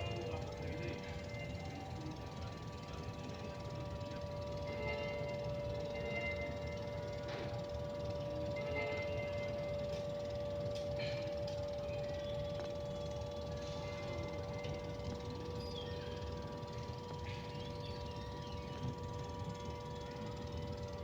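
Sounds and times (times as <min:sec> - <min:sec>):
alert siren steady tone: 0:00.0 - 0:21.0.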